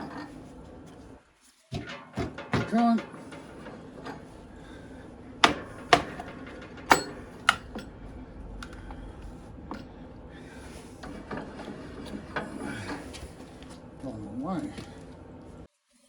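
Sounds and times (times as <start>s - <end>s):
faint machine hum: 0.0s - 1.2s, 1.8s - 15.7s
band saw knocking: 1.7s - 13.8s.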